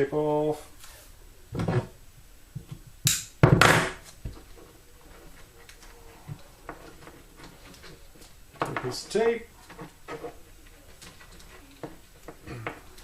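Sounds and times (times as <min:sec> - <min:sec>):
wires being handled: 0:04.0 - 0:13.0.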